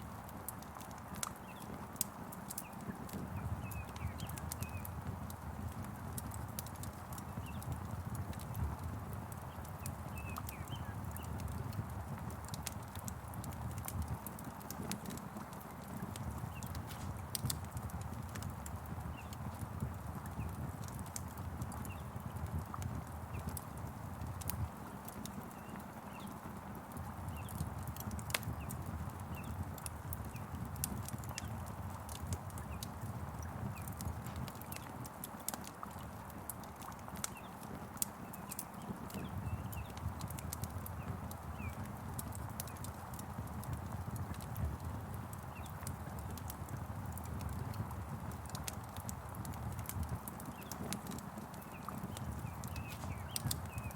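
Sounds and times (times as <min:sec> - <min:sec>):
rain: 0:00.0 - 0:53.9
wood fire crackling: 0:00.0 - 0:53.9
faint bird chirps: 0:51.6 - 0:53.9.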